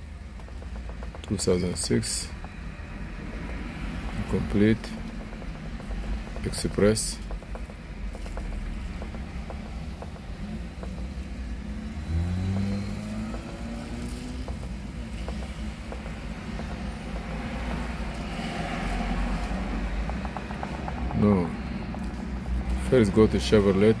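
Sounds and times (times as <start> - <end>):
vehicle engine revving: 0.7 - 24.0
vehicle passing: 8.2 - 24.0.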